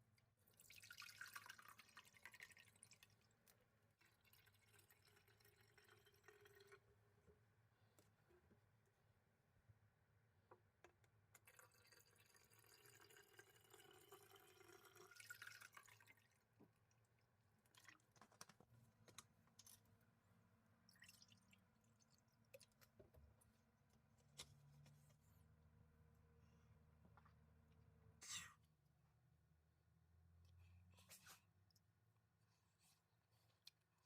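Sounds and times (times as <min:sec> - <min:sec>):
faint trickling water: 0:00.2 - 0:07.3, 0:11.4 - 0:18.2, 0:20.7 - 0:23.1.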